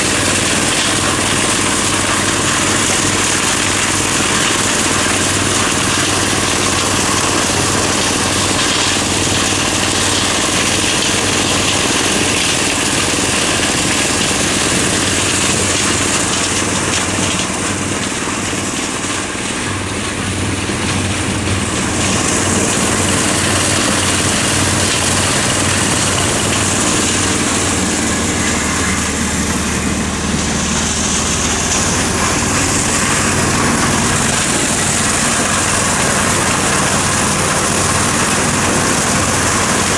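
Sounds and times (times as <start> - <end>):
corn sheller engine hum: 0.0 - 39.9
dense mechanical noise: 0.0 - 39.9.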